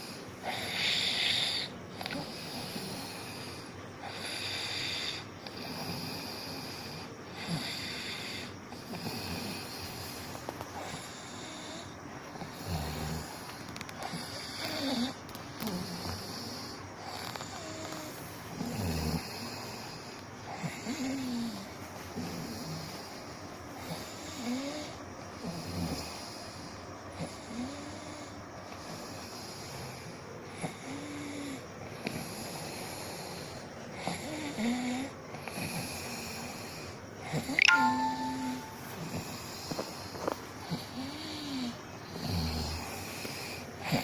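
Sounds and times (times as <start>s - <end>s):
person snoring: 37.7s - 38.7s.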